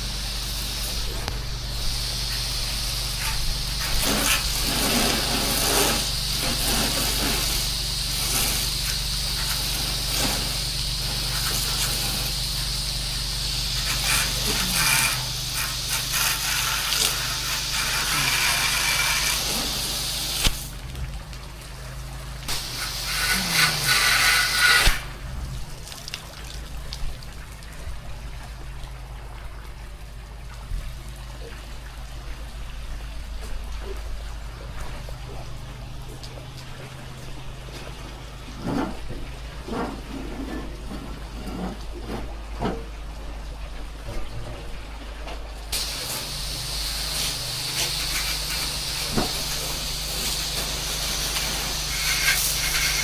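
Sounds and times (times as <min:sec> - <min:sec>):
pressure washer spraying water: 0:00.0 - 0:21.0, 0:22.2 - 0:26.2, 0:45.7 - 0:53.0
motor and pump humming: 0:00.0 - 0:53.0.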